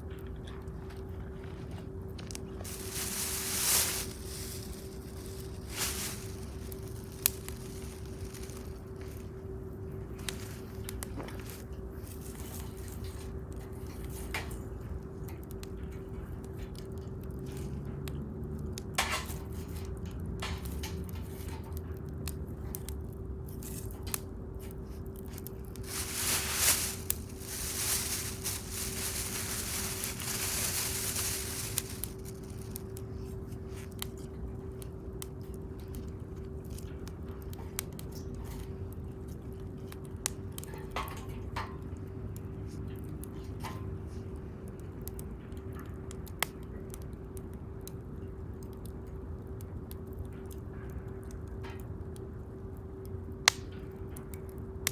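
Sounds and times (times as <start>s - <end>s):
bonfire crackling and popping: 2.1s - 13.6s, 23.6s - 35.6s, 53.4s - 54.9s
rushing hiss: 2.7s - 8.5s, 25.8s - 32.5s.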